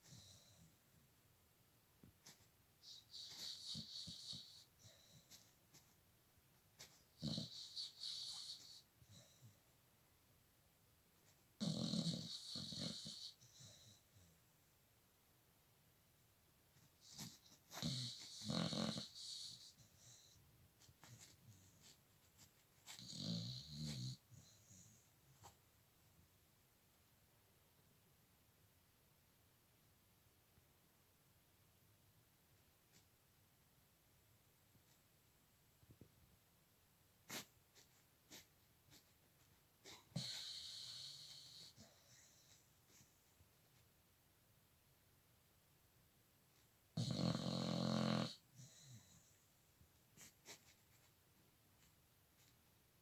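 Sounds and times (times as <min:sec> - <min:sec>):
dog snoring: 0:02.8 - 0:05.2, 0:07.2 - 0:09.4, 0:11.6 - 0:14.0, 0:17.0 - 0:20.4, 0:22.9 - 0:25.0, 0:39.8 - 0:42.6, 0:47.0 - 0:49.3.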